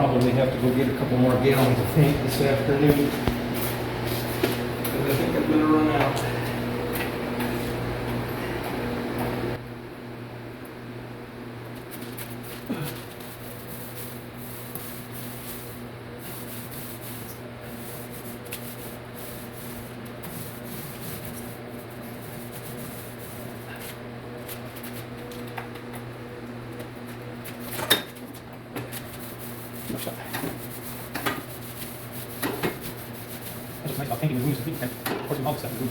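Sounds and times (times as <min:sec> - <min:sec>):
steady low hum: 0:00.0 - 0:35.9
paint roller rubbing on wall: 0:00.2 - 0:06.6, 0:11.9 - 0:25.4, 0:27.4 - 0:35.9.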